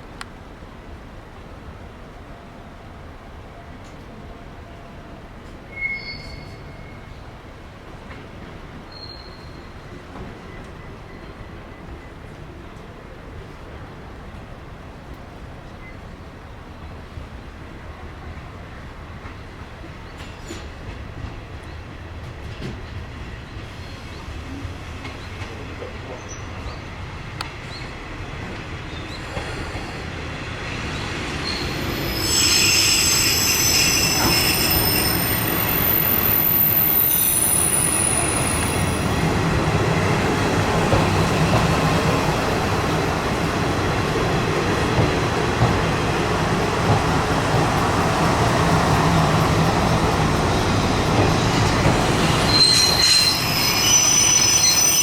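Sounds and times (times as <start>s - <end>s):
diesel railcar running: 0.1s - 55.0s
high wheel squeal: 5.7s - 7.1s, 31.4s - 39.3s, 52.3s - 55.0s.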